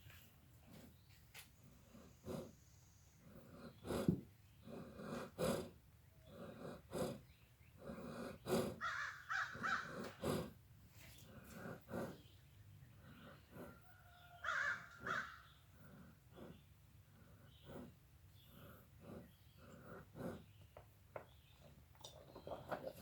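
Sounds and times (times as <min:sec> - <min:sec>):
pet breathing hard: 0:01.7 - 0:10.6, 0:11.2 - 0:14.0, 0:15.0 - 0:20.6.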